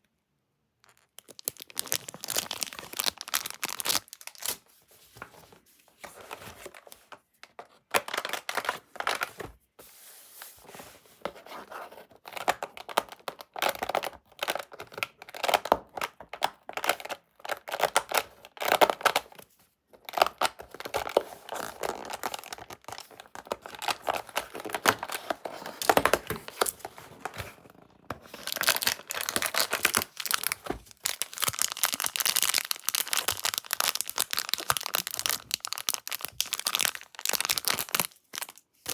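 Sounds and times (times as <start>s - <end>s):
candy packaging crinkling: 0.8s - 4.8s, 12.4s - 19.4s, 20.0s - 38.9s.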